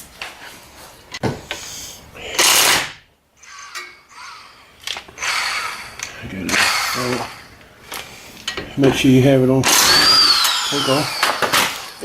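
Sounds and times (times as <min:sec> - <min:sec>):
impact wrench bursts: 0:02.4 - 0:04.6, 0:05.2 - 0:07.6, 0:09.6 - 0:12.0.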